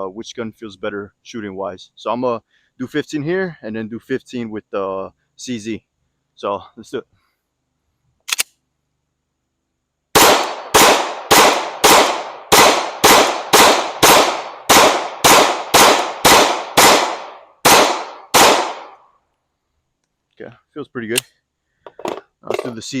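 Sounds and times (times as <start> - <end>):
pistol shots: 10.2 - 19.0.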